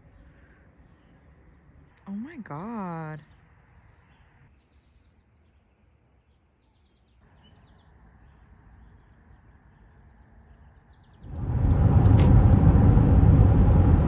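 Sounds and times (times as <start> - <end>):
faint songbird chirps: 3.2 - 11.2.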